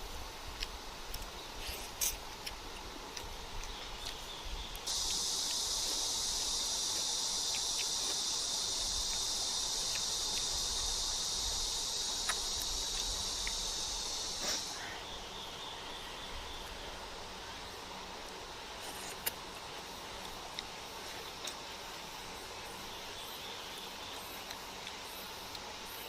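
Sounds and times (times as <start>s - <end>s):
insects chirring: 0.0s - 26.0s.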